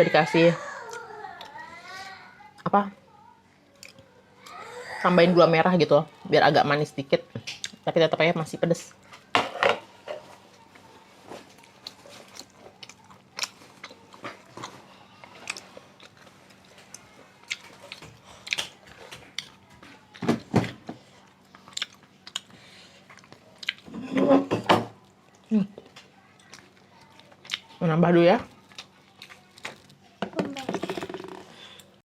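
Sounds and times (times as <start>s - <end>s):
person chewing food: 3.7s - 4.8s, 10.7s - 24.0s, 25.0s - 27.8s, 28.5s - 32.0s.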